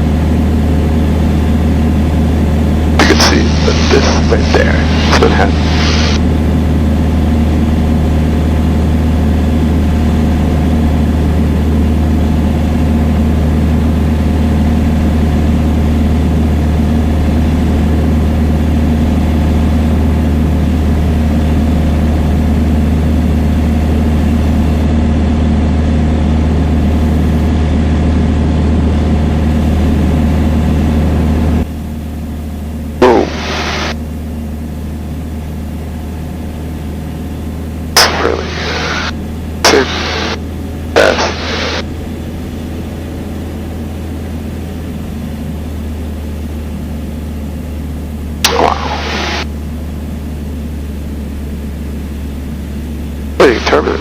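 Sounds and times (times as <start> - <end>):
propeller plane engine drone: 0.0 - 54.0.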